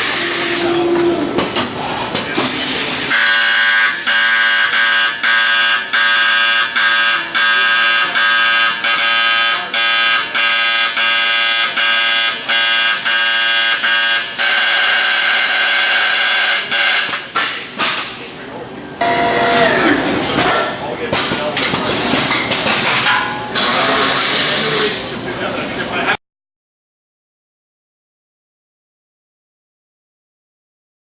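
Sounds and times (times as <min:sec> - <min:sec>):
electronic alarm buzzer beeping: 0:03.1 - 0:17.1, 0:19.0 - 0:19.7.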